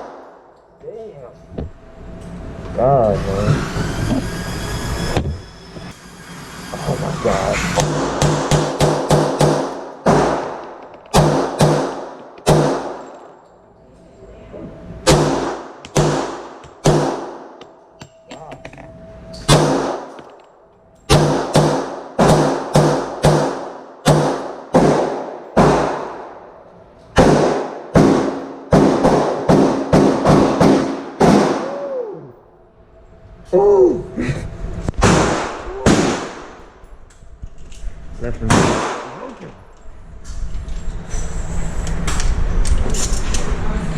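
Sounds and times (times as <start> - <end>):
rapid gunfire: 7.9 - 10.6, 11.2 - 13.0, 15.1 - 17.4, 27.2 - 31.7.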